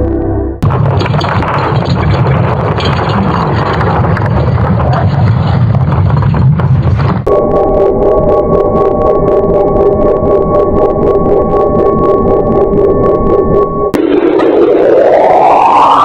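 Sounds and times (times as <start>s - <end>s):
dense low rumbling: 0.0s - 15.9s.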